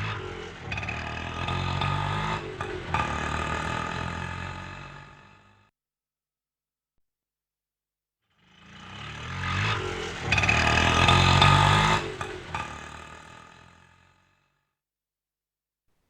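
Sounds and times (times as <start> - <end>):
auto rickshaw engine passing: 0.0 - 5.6, 8.5 - 14.5.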